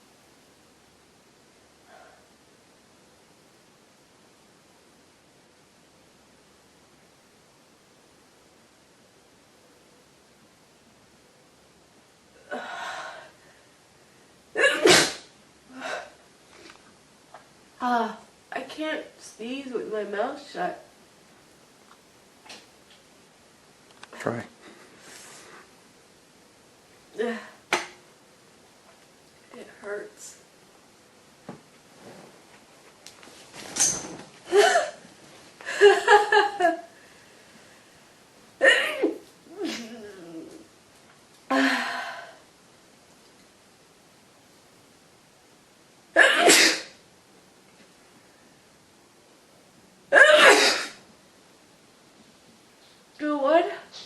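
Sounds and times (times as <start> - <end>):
person sneezing: 14.6 - 16.1, 46.2 - 46.9, 50.1 - 51.0.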